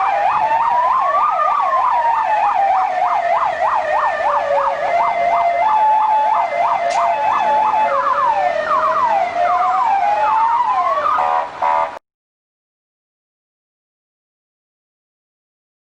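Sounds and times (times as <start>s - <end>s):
police car siren: 0.0s - 12.0s.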